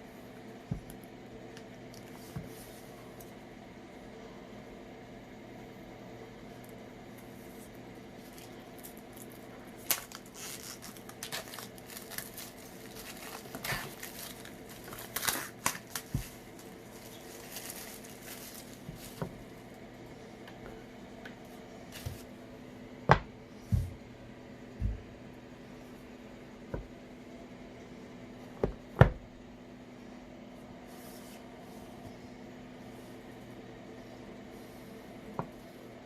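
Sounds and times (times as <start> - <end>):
packaging rustling and tearing: 8.2 - 19.2.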